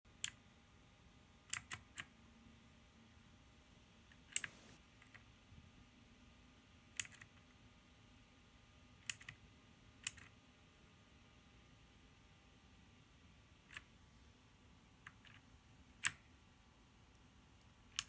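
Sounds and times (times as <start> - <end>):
mechanical keyboard key clicks: 1.5 - 2.1, 4.1 - 5.2, 7.0 - 7.4, 9.0 - 9.4, 10.0 - 10.3.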